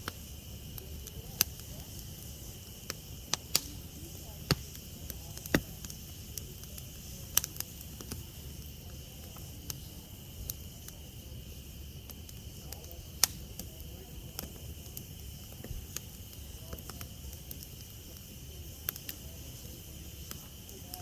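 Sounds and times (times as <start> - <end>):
campfire crackling: 0.0 - 21.0
loud sharp pops: 3.3 - 4.8.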